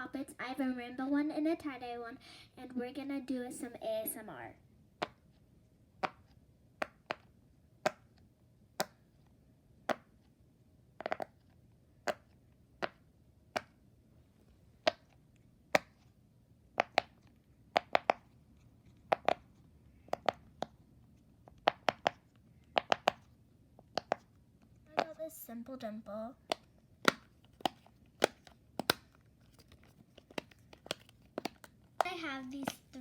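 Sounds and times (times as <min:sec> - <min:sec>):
pop-it toy bubbles popping: 0:06.0 - 0:06.2, 0:16.8 - 0:17.2, 0:17.8 - 0:18.3, 0:19.1 - 0:19.4, 0:20.1 - 0:20.7, 0:21.6 - 0:23.3, 0:26.4 - 0:29.1.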